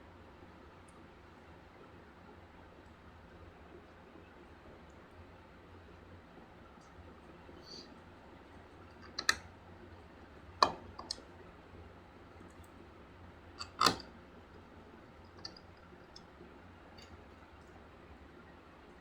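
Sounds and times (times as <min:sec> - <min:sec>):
plastic clicks and knocks: 0:09.0 - 0:09.4, 0:10.6 - 0:11.2, 0:13.6 - 0:14.1.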